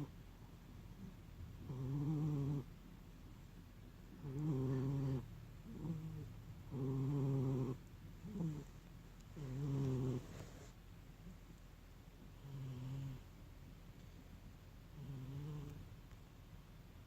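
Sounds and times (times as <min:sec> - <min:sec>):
cat snoring: 0:01.0 - 0:02.7, 0:04.1 - 0:10.8, 0:12.2 - 0:13.3, 0:14.9 - 0:15.9.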